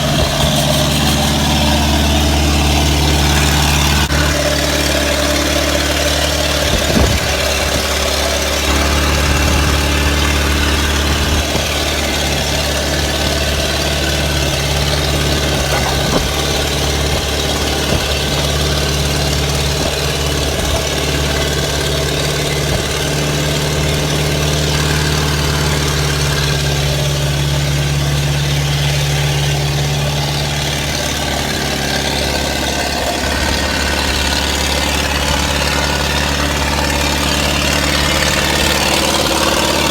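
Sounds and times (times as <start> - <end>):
short knocks: 0.0 - 26.8
heavy diesel engine running: 0.0 - 39.9.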